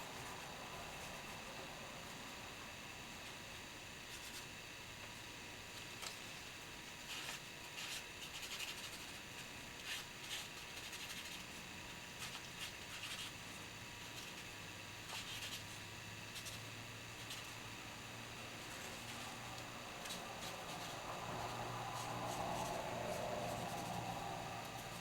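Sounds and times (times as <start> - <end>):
pen scratching on paper: 7.1 - 9.2, 9.8 - 11.6, 12.2 - 13.4, 15.1 - 15.7, 17.2 - 17.5, 20.0 - 25.0.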